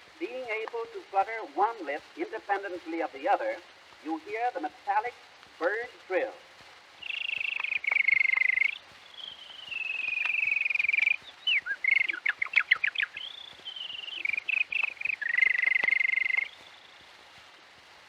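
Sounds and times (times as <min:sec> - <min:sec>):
man imitating bird trill: 0:07.0 - 0:08.8, 0:09.8 - 0:13.2, 0:13.9 - 0:16.5.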